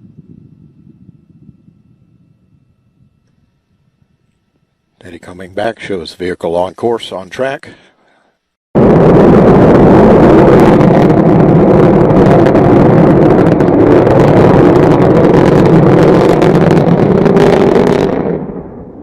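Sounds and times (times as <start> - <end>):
rocket engine roaring: 8.8 - 19.0.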